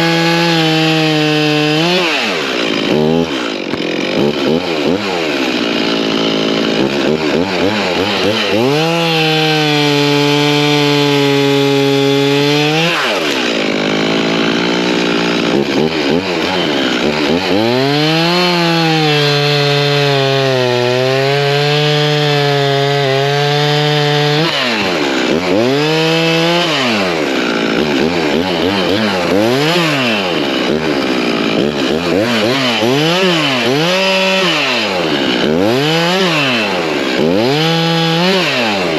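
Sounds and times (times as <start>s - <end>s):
chainsaw cutting branches: 0.0s - 38.9s.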